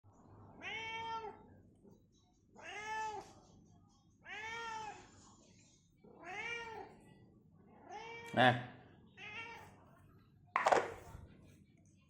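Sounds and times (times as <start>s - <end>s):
cat meowing: 0.6s - 1.4s.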